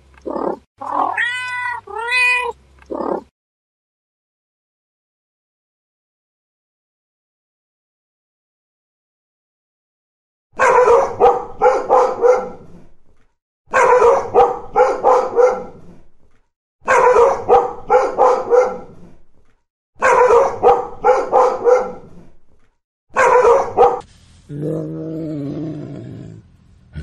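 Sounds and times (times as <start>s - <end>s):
dog barking: 10.6s - 12.8s, 13.7s - 15.9s, 16.8s - 19.0s, 20.0s - 22.2s, 23.1s - 24.1s.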